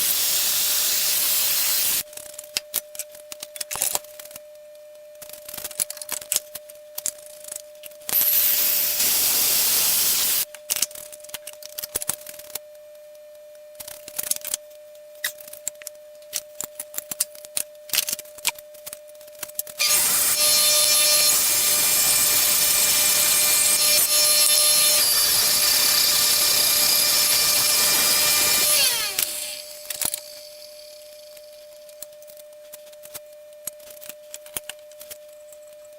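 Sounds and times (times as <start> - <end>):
power tool grinding: 0.0 - 2.0, 8.2 - 10.4, 19.8 - 31.8.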